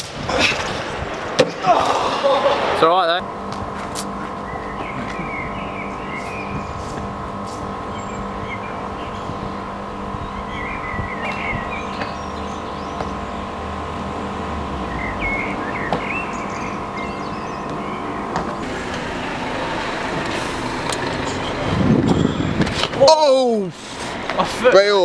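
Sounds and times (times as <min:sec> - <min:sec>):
steady mechanical hum: 0:00.0 - 0:25.0
rush of traffic: 0:18.2 - 0:23.0.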